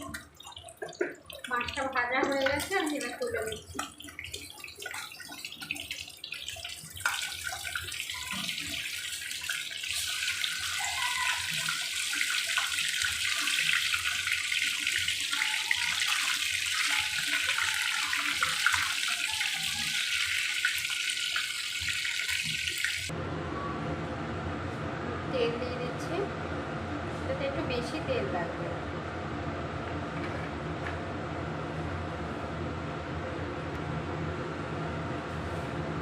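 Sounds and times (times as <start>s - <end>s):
oil sizzling in frying pan: 0.0s - 23.1s.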